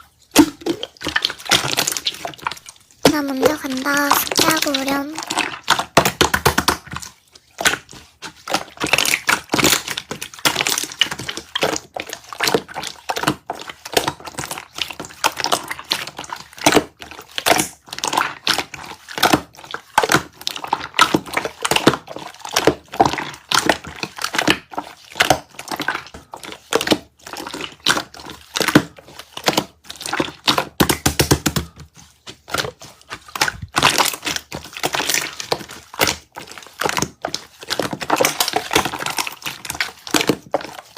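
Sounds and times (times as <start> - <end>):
slime crackling and popping: 3.6 - 24.7, 32.5 - 40.9.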